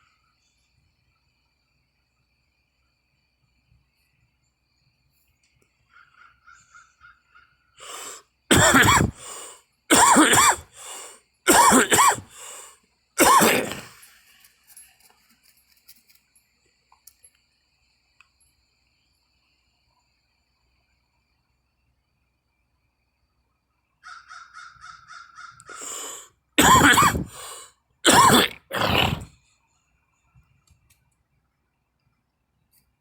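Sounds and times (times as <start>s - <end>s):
person coughing: 7.9s - 14.0s, 25.7s - 29.3s.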